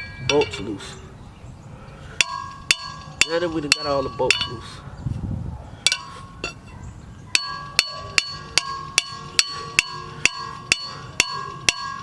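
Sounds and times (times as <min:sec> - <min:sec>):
hammer striking metal bolts: 0:02.2 - 0:04.6, 0:07.4 - 0:12.0.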